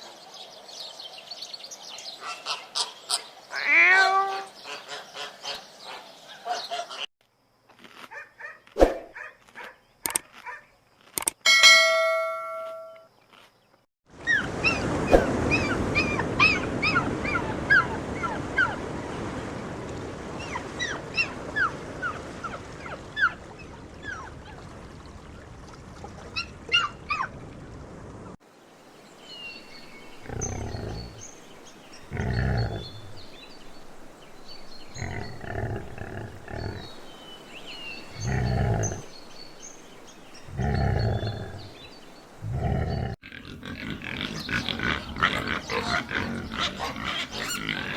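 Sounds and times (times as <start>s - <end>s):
birds chirping: 26.2s - 47.9s
large animal deep calls: 30.2s - 31.2s, 32.1s - 33.2s, 34.9s - 37.1s, 38.0s - 39.1s.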